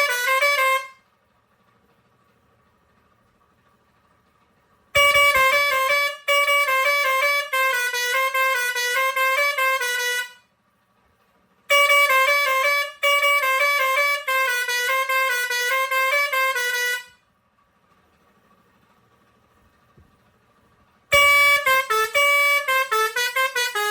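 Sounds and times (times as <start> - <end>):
musical air horn playing a tune: 0.0 - 1.0, 5.0 - 10.4, 11.7 - 17.2, 21.1 - 23.9.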